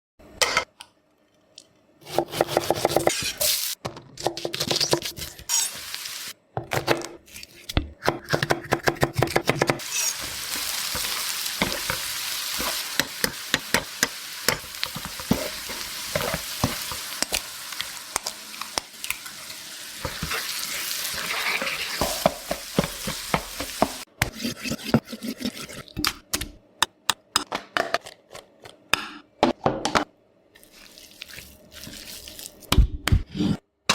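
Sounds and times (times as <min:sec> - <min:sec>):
rice sizzling in a pan: 0:05.5 - 0:06.4, 0:09.8 - 0:24.1.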